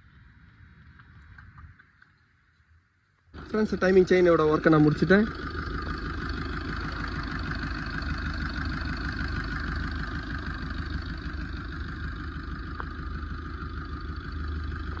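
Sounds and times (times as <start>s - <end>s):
car engine idling: 3.3s - 15.0s.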